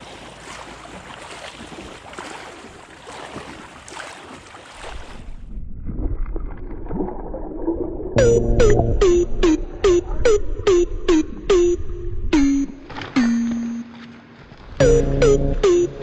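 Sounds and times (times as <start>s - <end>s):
electronic music with a beat: 8.2s - 14.2s, 14.8s - 16.0s.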